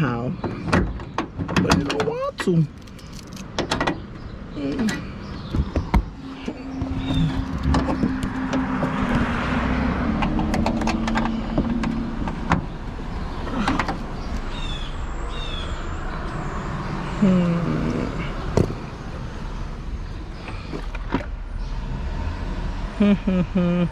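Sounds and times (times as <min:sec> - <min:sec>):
car passing by: 0:06.3 - 0:11.8.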